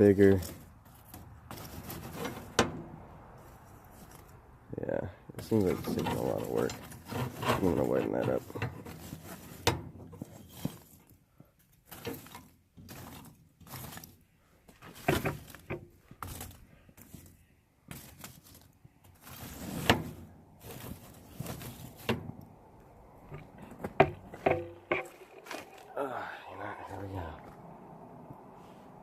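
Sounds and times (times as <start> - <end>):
metal knocks and clanks: 23.2 - 25.9.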